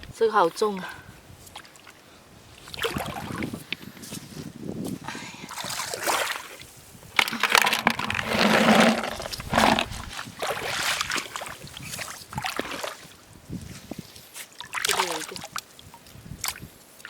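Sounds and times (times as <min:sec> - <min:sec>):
splashing of shallow water: 0:02.6 - 0:03.5, 0:05.5 - 0:06.6, 0:07.2 - 0:13.2, 0:14.5 - 0:16.7.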